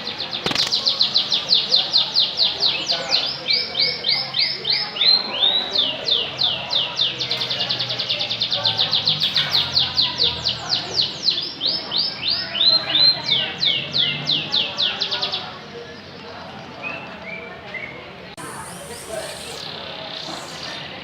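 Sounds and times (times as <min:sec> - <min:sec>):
canary singing trills: 0:16.7 - 0:21.0.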